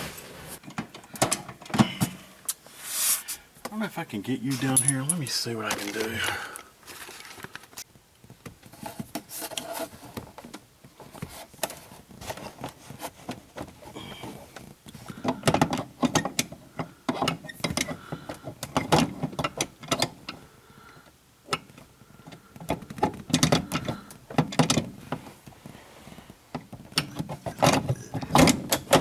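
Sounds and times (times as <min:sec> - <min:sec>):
tools and metal parts rattling: 0:04.5 - 0:07.8.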